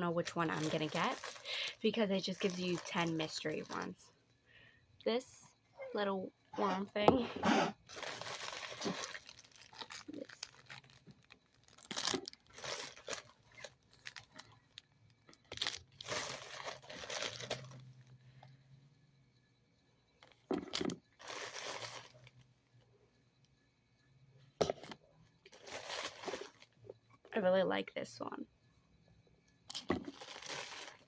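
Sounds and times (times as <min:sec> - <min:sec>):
plastic wrapping crinkling and tearing: 0:00.4 - 0:03.9, 0:07.9 - 0:17.8, 0:21.2 - 0:22.2, 0:25.5 - 0:26.7, 0:30.0 - 0:31.0.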